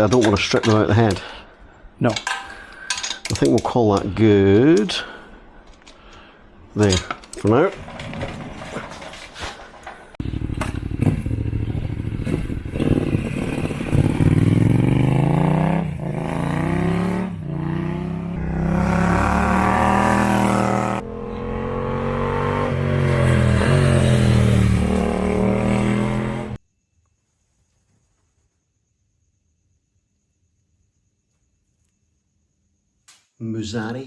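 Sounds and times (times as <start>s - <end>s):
motorcycle engine revving: 10.2s - 26.6s.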